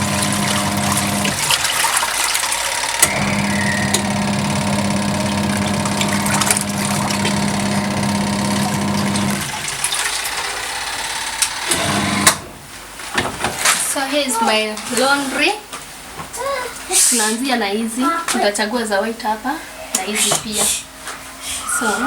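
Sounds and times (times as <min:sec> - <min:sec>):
water running into tub: 0:00.0 - 0:12.3
washing machine motor hum: 0:00.0 - 0:12.8.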